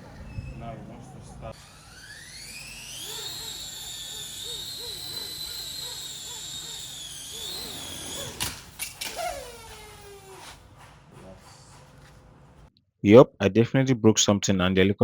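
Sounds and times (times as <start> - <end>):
rotor motor whine: 0.0 - 10.7.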